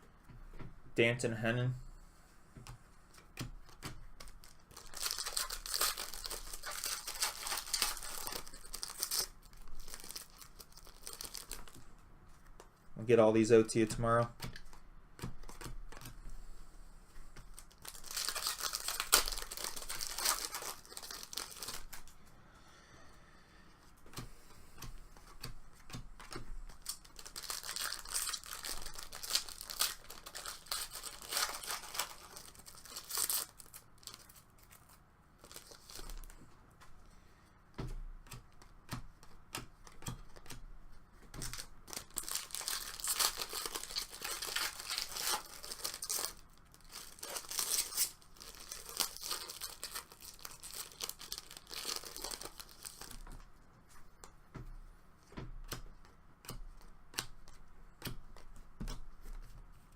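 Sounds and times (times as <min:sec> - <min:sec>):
wrappers crinkling: 0:03.6 - 0:11.8, 0:17.5 - 0:22.2, 0:25.2 - 0:36.4, 0:41.4 - 0:54.2
foil packs tearing: 0:04.3 - 0:11.8, 0:17.6 - 0:22.1, 0:26.8 - 0:34.3, 0:41.5 - 0:53.2.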